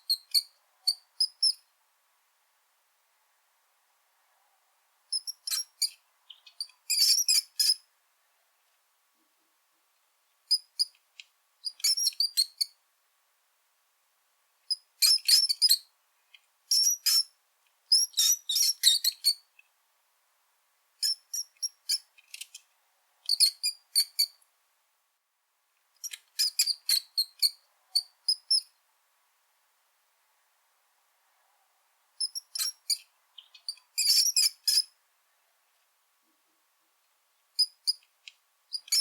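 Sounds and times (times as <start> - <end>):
rat squeaking: 5.1 - 7.8, 11.6 - 12.6, 16.7 - 17.3, 17.9 - 19.4, 32.2 - 34.9, 38.7 - 39.0.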